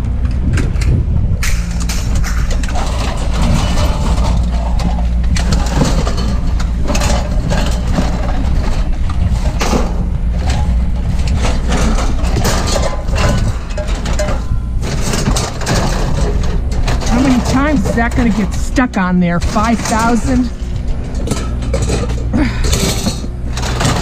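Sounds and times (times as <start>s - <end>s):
short clanks and knocks: 0.6s - 18.8s, 19.4s - 24.0s
heavy vehicle engine idling: 1.2s - 24.0s.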